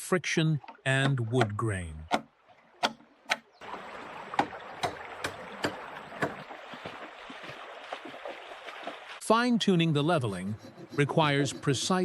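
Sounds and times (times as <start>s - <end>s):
hammering knocks: 0.6s - 3.5s
stream water rushing: 2.2s - 9.2s.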